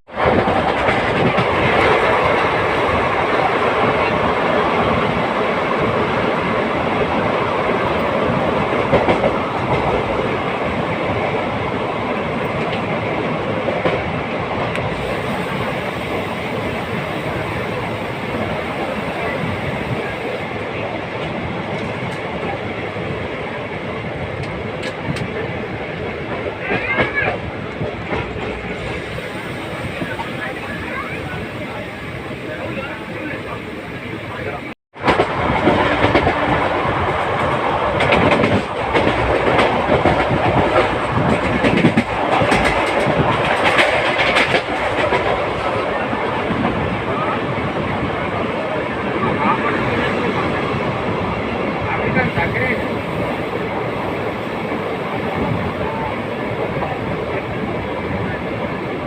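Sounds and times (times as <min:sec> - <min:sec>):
train wheels on rails: 0:00.1 - 0:59.0.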